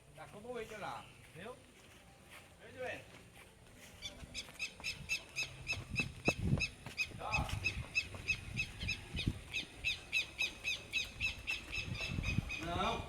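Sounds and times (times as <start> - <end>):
bird chirping: 4.0 - 13.0.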